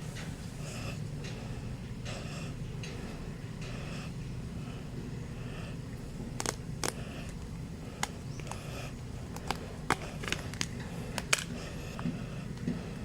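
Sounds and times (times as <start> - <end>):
plastic phone case clicks: 6.4 - 7.0, 9.3 - 11.5.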